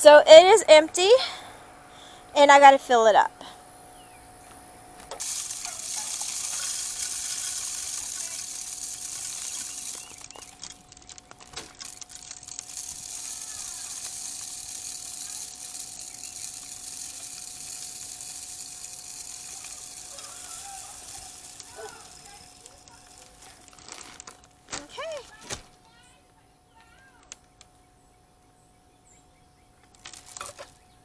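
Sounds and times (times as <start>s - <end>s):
bird seed pouring hiss: 5.2s - 24.4s.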